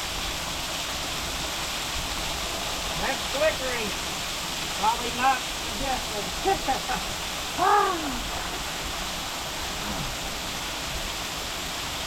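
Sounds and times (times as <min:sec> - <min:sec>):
waterfall rushing: 0:00.0 - 0:12.0
person exclaiming: 0:06.4 - 0:08.4.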